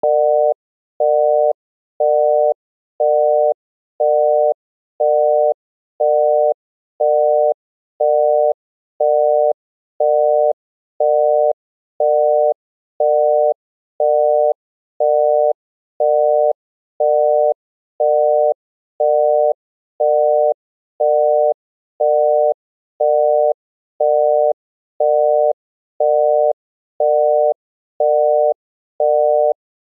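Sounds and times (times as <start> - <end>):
telephone busy tone: 0.0 - 29.6.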